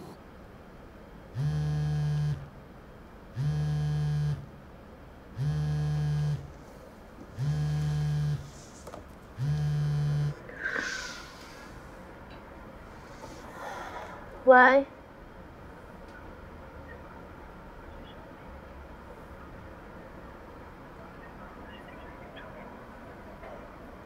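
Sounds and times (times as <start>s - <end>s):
mobile phone vibrating: 1.4s - 2.5s, 3.4s - 4.5s, 5.4s - 6.5s, 7.4s - 8.7s, 9.4s - 10.4s.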